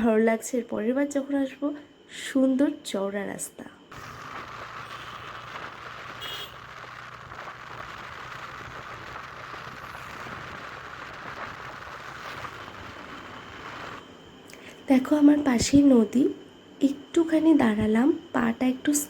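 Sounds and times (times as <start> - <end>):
motorcycle engine hum: 3.9 - 14.0
wind and road rush: 3.9 - 14.0.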